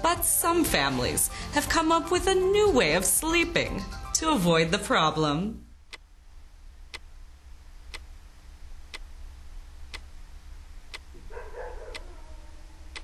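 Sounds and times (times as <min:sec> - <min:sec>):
clock ticking: 0:05.8 - 0:06.1, 0:06.9 - 0:07.2, 0:07.8 - 0:08.2, 0:08.8 - 0:09.2, 0:09.8 - 0:12.1.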